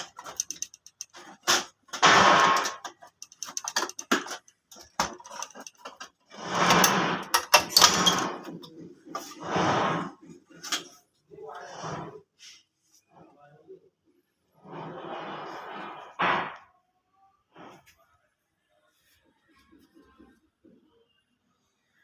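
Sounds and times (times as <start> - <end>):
plastic scraping and sliding: 0.0 - 12.2, 14.6 - 16.7.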